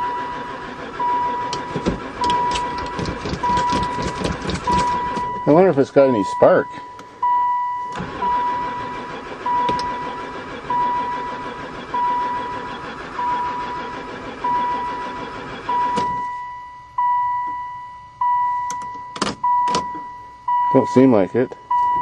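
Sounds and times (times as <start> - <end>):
starter cranking engine: 0.0 - 5.9, 7.8 - 16.2
electronic warning chime beeping: 4.6 - 22.0.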